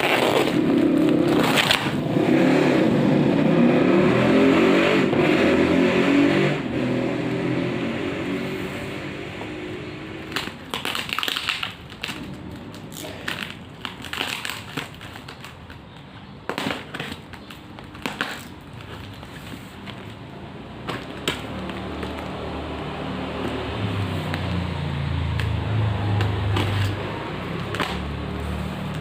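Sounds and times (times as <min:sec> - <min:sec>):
packaging crinkling and clicking: 0:00.0 - 0:02.0, 0:10.2 - 0:24.6.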